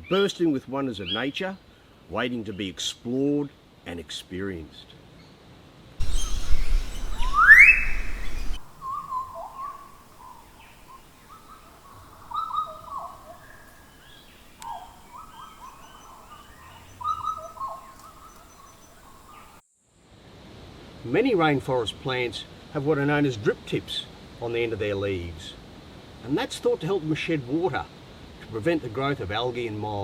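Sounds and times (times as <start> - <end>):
low rumble: 6.0 - 8.8
birds chirping: 6.0 - 19.6
long rising bird whistle: 6.0 - 19.6.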